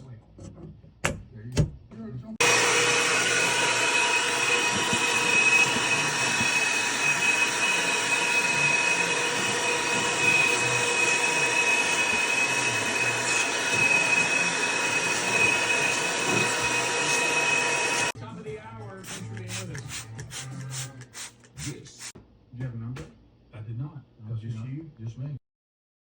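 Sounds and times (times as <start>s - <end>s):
shop vacuum running: 2.4s - 18.2s.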